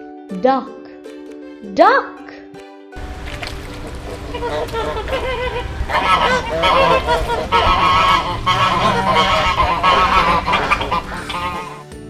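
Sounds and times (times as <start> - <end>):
ducks quacking: 3.0 - 12.0.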